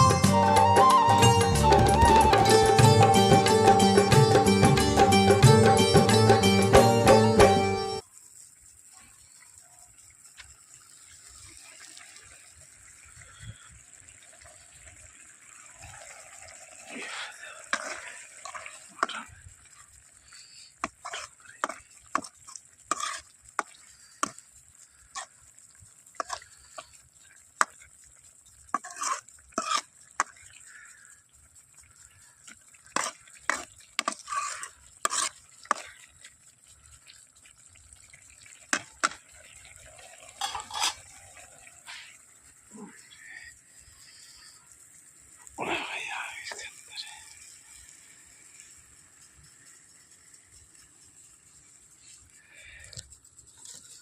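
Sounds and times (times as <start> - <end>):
stirring: 15.8 - 30.9, 31.6 - 42.2
utensils clinking against pots: 40.2 - 41.3.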